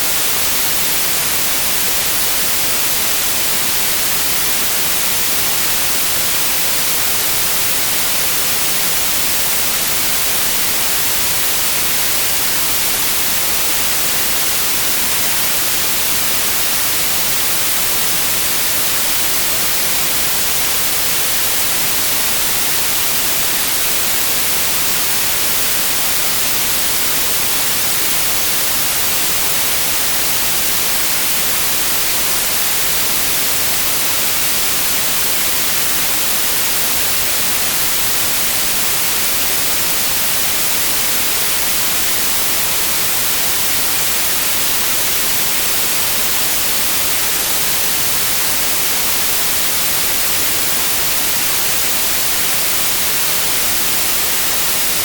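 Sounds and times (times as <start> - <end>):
steady white noise hiss: 0.0 - 55.0.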